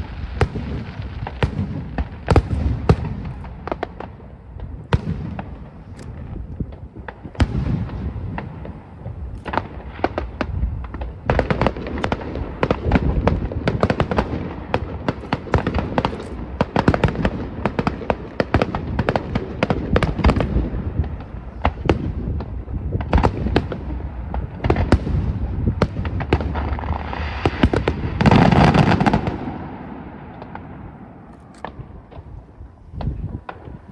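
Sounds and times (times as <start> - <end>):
continuous low rumble: 0.0 - 33.9
fireworks bangs and crackles: 0.0 - 33.9
heavy firework boom: 0.0 - 33.9.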